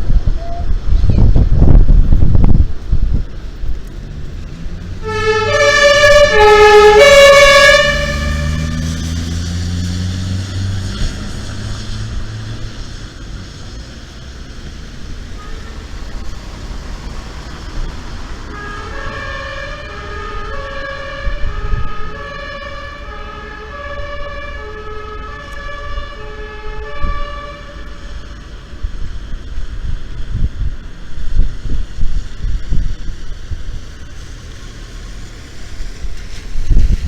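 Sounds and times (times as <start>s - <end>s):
rushing wind-like noise: 0.0s - 37.0s
siren with stepping tones: 5.0s - 9.1s, 18.5s - 28.3s.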